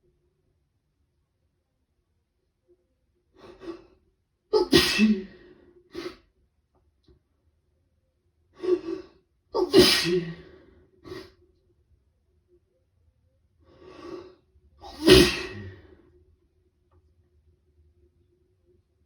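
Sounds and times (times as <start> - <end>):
person sneezing: 4.5 - 6.2, 8.6 - 11.4, 14.8 - 15.9.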